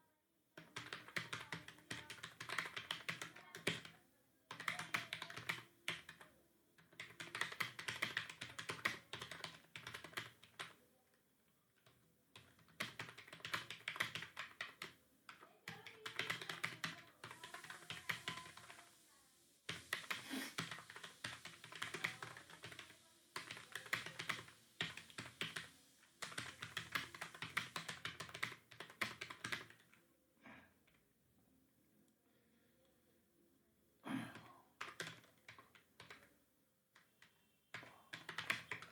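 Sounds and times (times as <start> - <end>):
fast typing on computer keyboard: 0.6 - 10.8, 11.8 - 18.9, 19.7 - 30.0, 34.3 - 36.3, 37.0 - 38.9.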